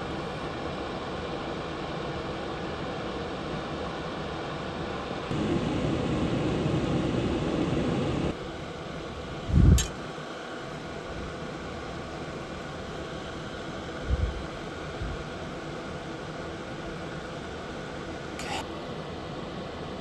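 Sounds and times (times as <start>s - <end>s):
steady whirring: 5.3s - 8.4s, 18.4s - 18.8s.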